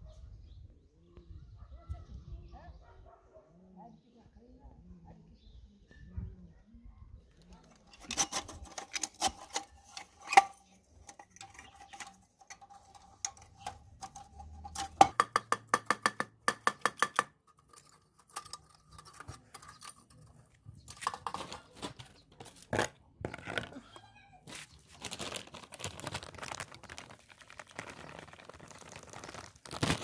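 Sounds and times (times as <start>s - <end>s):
metal lantern parts clinking: 7.6s - 15.3s, 17.0s - 21.7s
rapid tapping on metal: 11.3s - 17.4s.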